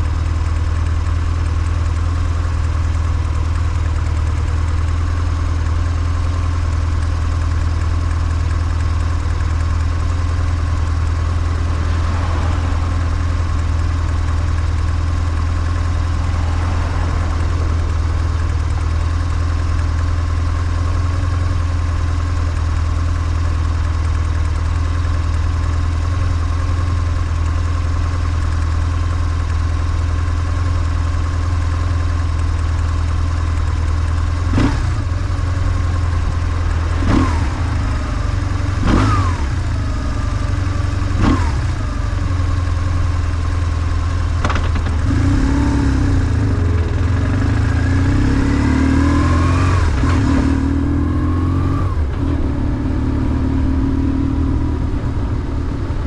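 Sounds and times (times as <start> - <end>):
motorcycle engine running: 0.0 - 56.0
sharp clunks: 44.4 - 45.1.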